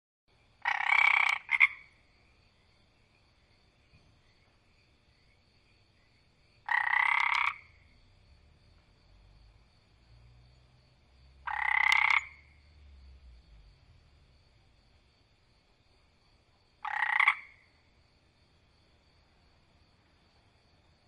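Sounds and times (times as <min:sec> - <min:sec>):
frog croaking: 0:00.6 - 0:02.1, 0:06.6 - 0:08.1, 0:11.3 - 0:13.8, 0:16.7 - 0:17.9.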